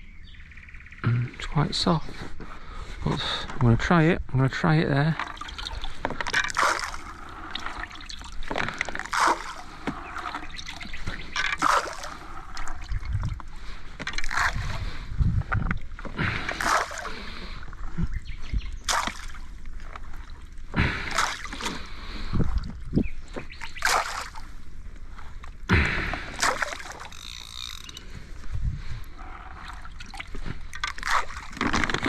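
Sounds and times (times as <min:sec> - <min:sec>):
water splashing around boat: 0:04.6 - 0:32.0
low rumble: 0:14.4 - 0:16.6.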